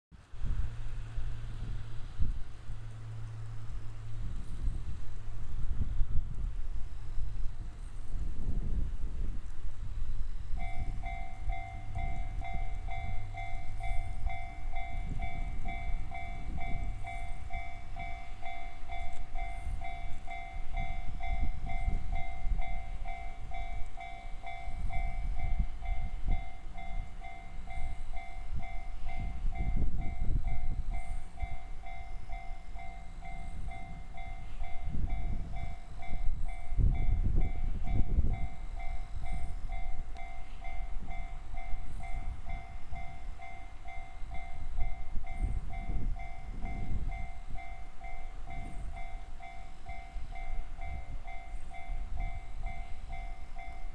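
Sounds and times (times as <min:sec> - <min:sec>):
uneven low rumble: 0:00.2 - 0:24.0.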